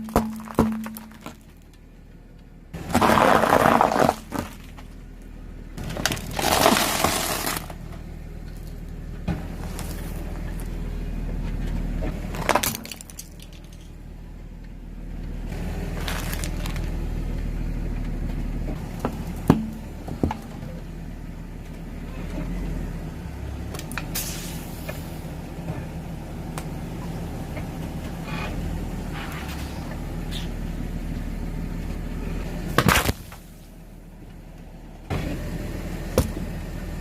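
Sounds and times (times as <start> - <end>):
tyres crushing objects: 0.0 - 1.7, 2.8 - 4.9, 5.8 - 7.9, 12.1 - 13.8, 15.9 - 17.0, 32.7 - 33.5
car engine running: 0.0 - 37.0.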